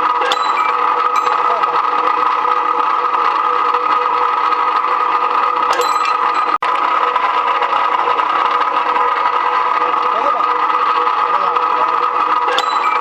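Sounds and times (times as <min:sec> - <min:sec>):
metallic clatter: 0:00.0 - 0:03.9, 0:04.5 - 0:06.7, 0:11.0 - 0:13.0
rebar cutting machine humming: 0:00.0 - 0:13.0.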